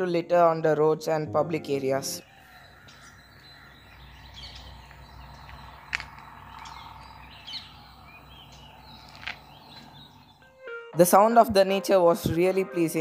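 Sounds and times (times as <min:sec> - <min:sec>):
small birds chirping: 0:02.2 - 0:10.5.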